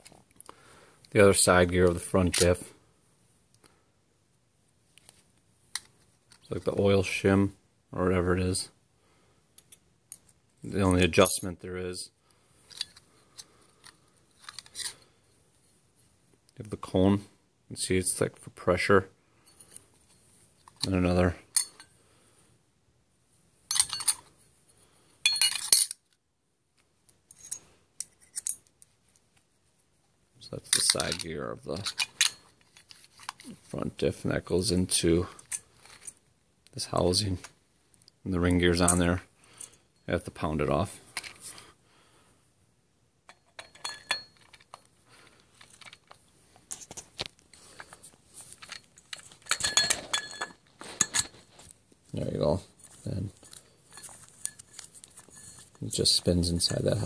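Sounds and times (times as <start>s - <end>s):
metal parts clinking and rattling: 13.8s - 15.0s, 23.7s - 24.3s, 25.2s - 26.2s, 27.3s - 29.2s, 30.7s - 33.5s, 43.3s - 47.0s, 47.6s - 51.7s, 52.8s - 57.0s.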